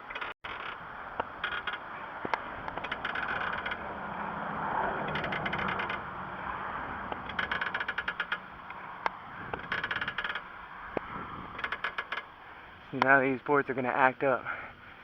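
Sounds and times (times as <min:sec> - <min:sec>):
jack ratchet clicking: 0:00.0 - 0:01.8, 0:02.7 - 0:03.8, 0:05.0 - 0:06.1, 0:07.1 - 0:08.5, 0:09.5 - 0:12.3.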